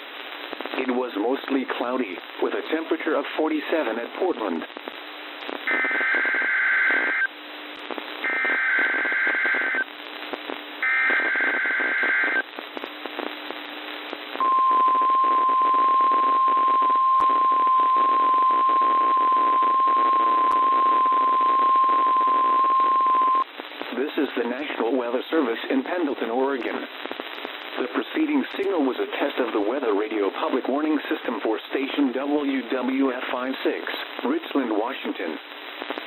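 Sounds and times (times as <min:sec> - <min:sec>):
static hiss: 0:00.0 - 0:36.0
steady warning alarm tone: 0:08.3 - 0:09.8, 0:10.8 - 0:12.4.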